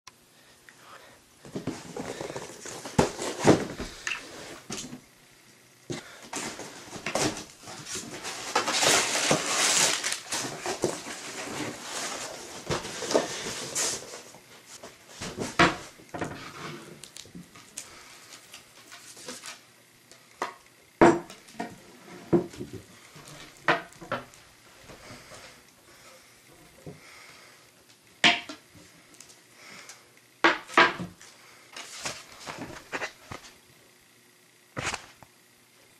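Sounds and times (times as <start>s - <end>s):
packaging rustling: 1.5s - 4.7s, 6.3s - 15.6s.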